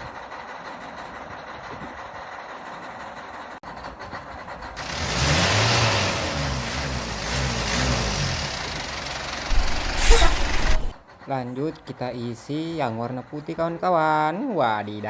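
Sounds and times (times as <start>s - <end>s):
sand pouring hiss: 9.5s - 10.9s.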